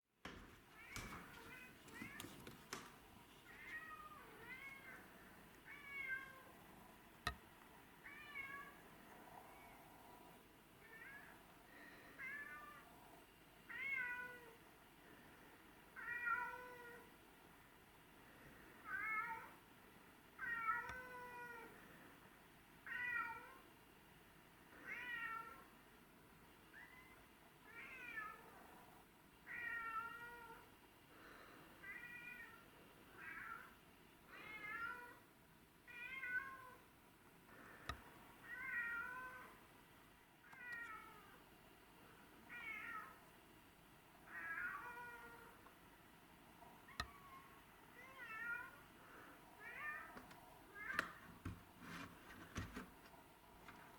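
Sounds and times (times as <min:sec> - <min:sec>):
cats meowing: 0:03.5 - 0:06.5, 0:42.5 - 0:43.2, 0:46.9 - 0:48.8.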